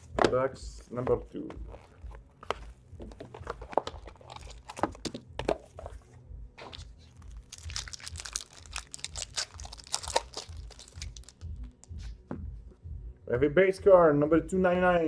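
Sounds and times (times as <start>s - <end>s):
plastic wrapping crinkling: 6.6s - 11.5s.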